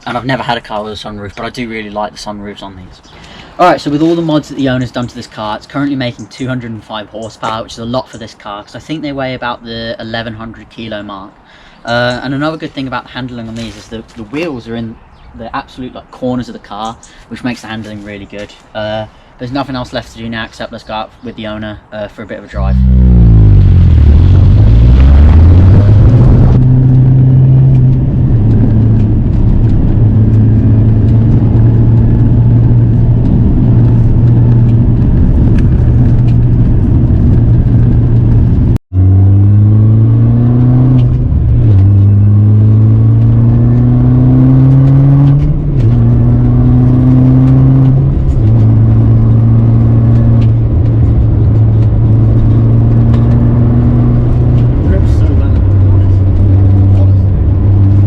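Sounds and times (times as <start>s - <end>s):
car engine accelerating through gears: 22.6s - 58.0s.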